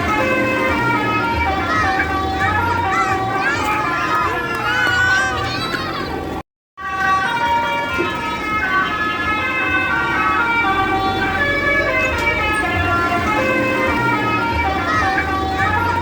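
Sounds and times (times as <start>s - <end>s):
multi-tone air horn tune: 0.0s - 4.6s.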